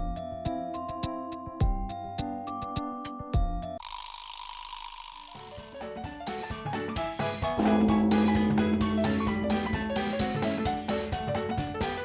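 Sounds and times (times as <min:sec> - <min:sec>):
held low note: 0:07.6 - 0:11.6
steady beat: 0:07.6 - 0:11.6
plucked notes: 0:07.6 - 0:12.0.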